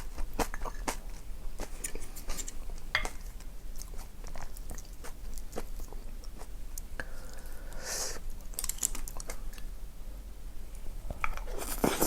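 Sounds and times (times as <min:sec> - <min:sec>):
soft chewing: 0:00.0 - 0:09.7.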